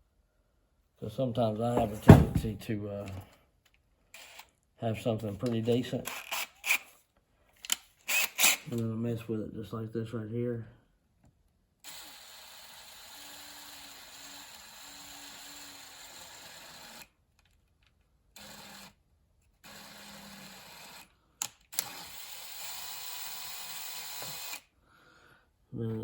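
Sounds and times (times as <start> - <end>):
power drill drilling metal: 8.1 - 8.7, 21.7 - 24.6.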